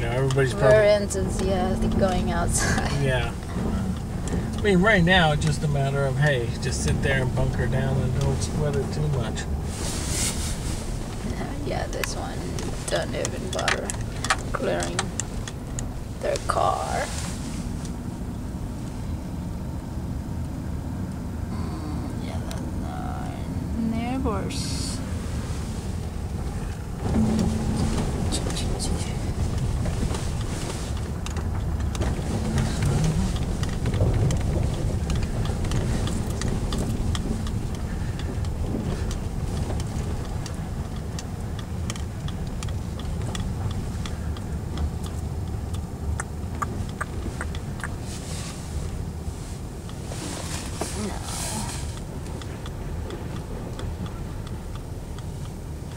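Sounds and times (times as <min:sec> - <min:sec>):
car engine and tyres rumbling: 0:00.0 - 0:55.9
small clicks and crackles: 0:26.7 - 0:55.9.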